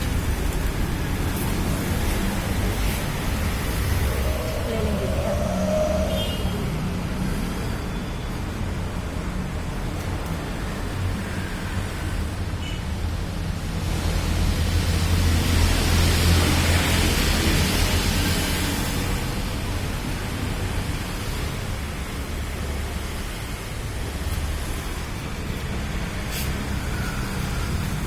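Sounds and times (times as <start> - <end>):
broad hiss: 26.1 - 27.3.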